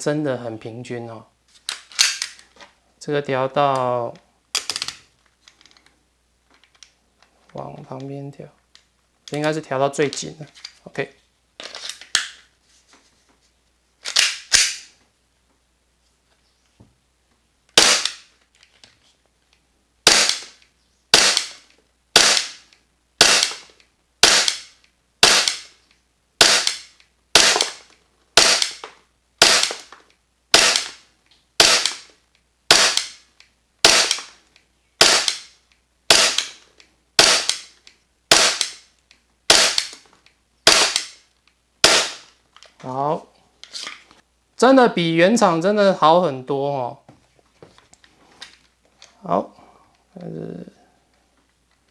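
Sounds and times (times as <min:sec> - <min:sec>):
airsoft pistol shots: 0:17.8 - 0:18.2, 0:20.0 - 0:21.6, 0:22.2 - 0:22.6, 0:23.2 - 0:25.7, 0:26.4 - 0:27.8, 0:28.4 - 0:28.8, 0:29.4 - 0:29.9, 0:30.5 - 0:31.0, 0:31.6 - 0:32.1, 0:32.7 - 0:33.2, 0:33.8 - 0:34.3, 0:35.0 - 0:35.5, 0:36.1 - 0:36.6, 0:37.2 - 0:37.7, 0:38.3 - 0:38.8, 0:39.5 - 0:39.9, 0:40.6 - 0:41.2, 0:41.8 - 0:42.3.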